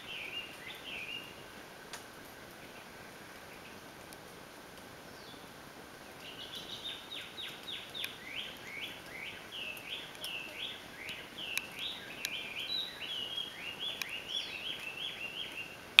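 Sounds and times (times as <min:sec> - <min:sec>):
bird singing whistled notes: 0:00.0 - 0:01.4, 0:06.2 - 0:15.8.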